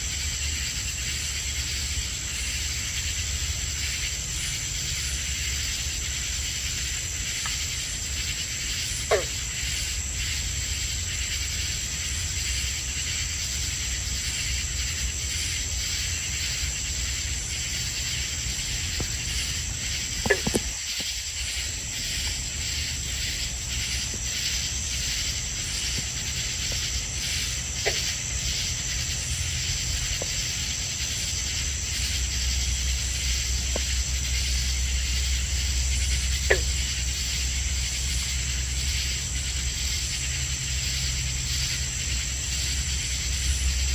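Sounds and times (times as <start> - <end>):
crickets trilling: 0.0 - 43.9
katydids rasping: 4.8 - 43.9.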